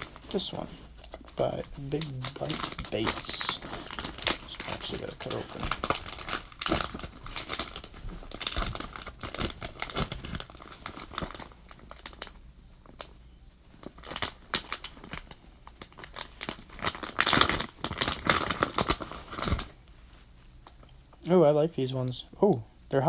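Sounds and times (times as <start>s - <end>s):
plastic package crinkling: 0.0s - 19.8s.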